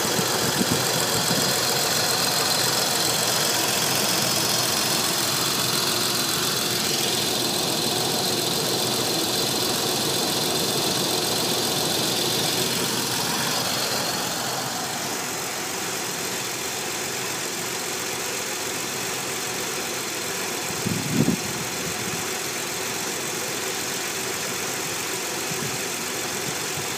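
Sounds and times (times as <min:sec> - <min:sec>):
car engine idling with hiss: 0:00.0 - 0:26.9.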